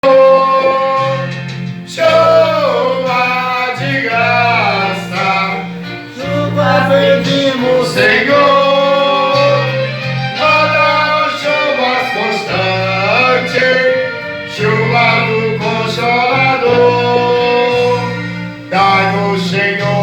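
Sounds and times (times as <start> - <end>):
bass held notes: 0.0 - 11.3
guitar: 0.0 - 20.0
person singing: 0.0 - 20.0.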